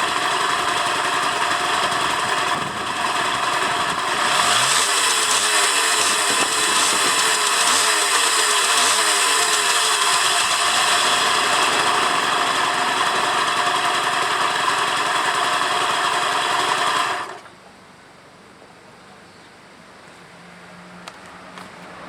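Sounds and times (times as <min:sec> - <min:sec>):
scooter two-stroke engine running: 0:00.0 - 0:17.5.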